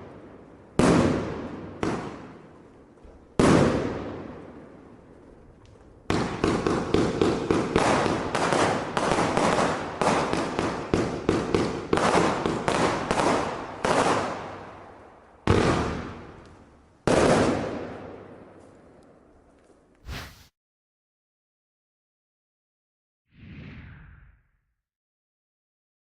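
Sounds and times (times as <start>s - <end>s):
fireworks battery firing shots: 6.1s - 14.5s.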